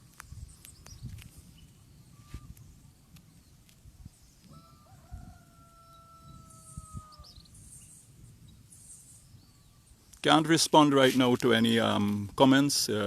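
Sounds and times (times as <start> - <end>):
rooster crowing: 4.5 - 7.4.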